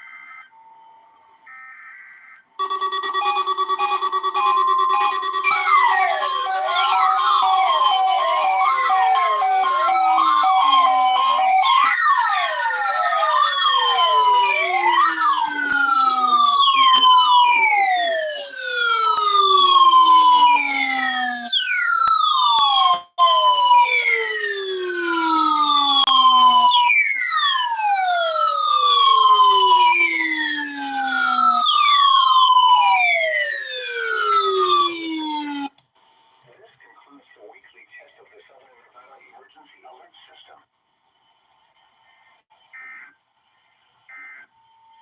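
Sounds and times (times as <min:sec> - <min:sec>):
electronic alert sirens falling in pitch: 0:01.5 - 0:35.7.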